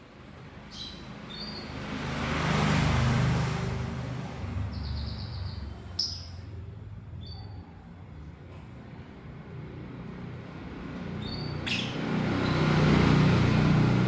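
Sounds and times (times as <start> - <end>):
birds chirping high: 11.2 - 12.8.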